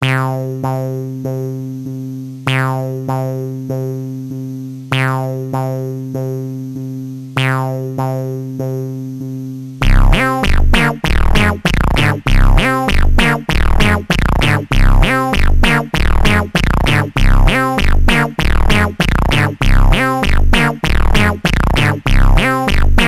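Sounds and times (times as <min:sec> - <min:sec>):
synthesizer chords: 0:00.0 - 0:04.2, 0:04.9 - 0:08.9, 0:09.8 - 0:23.0
heavy bass line: 0:09.8 - 0:23.0.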